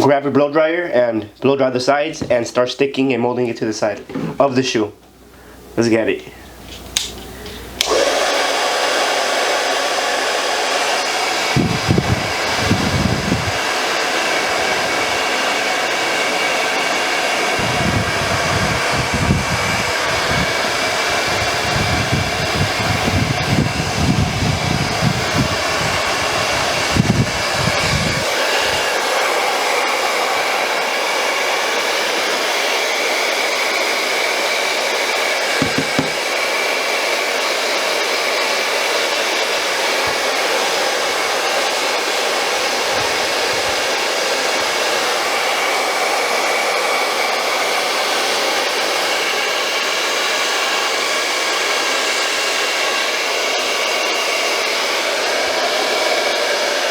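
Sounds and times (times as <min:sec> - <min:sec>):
blow dryer running: 0:07.0 - 0:56.9
low rumbling air gusts: 0:11.6 - 0:13.6, 0:17.6 - 0:28.8.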